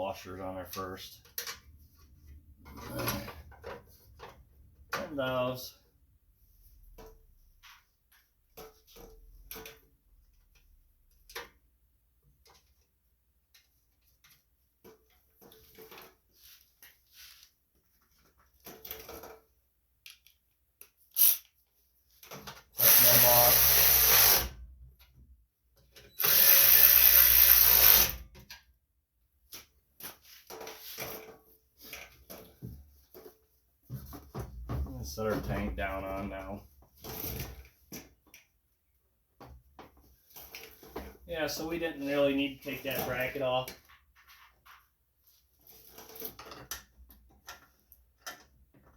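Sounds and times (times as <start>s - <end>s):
power driver running: 22.8s - 24.4s, 26.2s - 28.2s.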